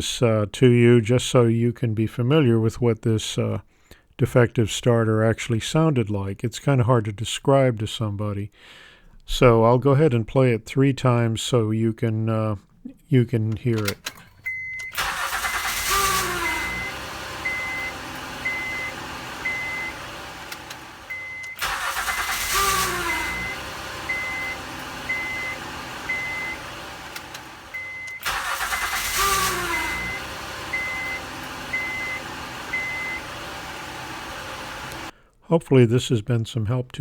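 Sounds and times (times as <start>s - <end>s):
car engine idling: 13.7s - 35.1s
starter motor moaning: 15.0s - 35.1s.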